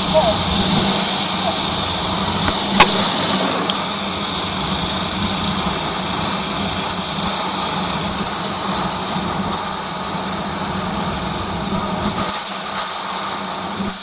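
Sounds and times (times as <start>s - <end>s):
motorcycle engine running: 0.0s - 12.7s
sharp click: 2.4s - 3.8s.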